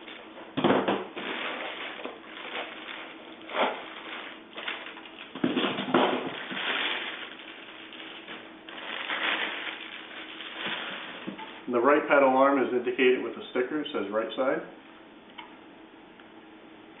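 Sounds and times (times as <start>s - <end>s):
packaging rustling and crinkling: 1.0s - 11.7s.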